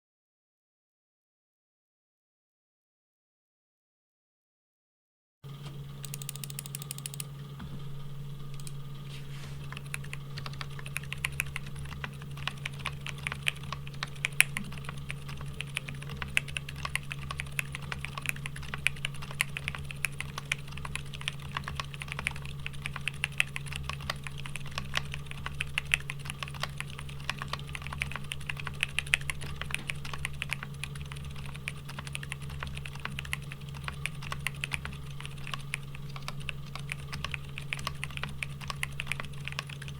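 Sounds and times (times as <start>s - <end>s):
steady low hum: 5.4s - 39.9s
mechanical keyboard typing: 6.0s - 7.3s, 9.6s - 39.9s.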